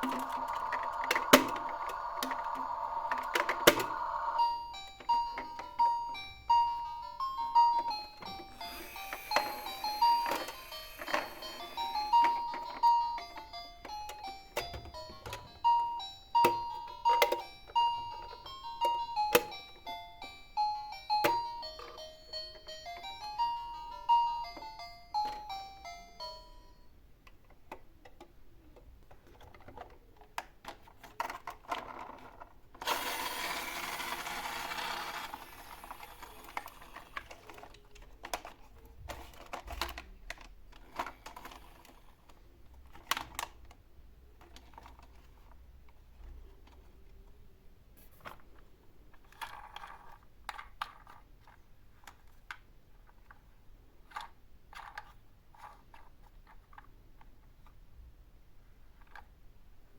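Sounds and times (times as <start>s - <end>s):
plastic toy parts clicking: 0.0s - 4.2s, 27.3s - 43.8s, 49.1s - 53.4s, 54.0s - 57.8s
toy beeping jingle: 0.0s - 26.9s, 32.9s - 37.1s.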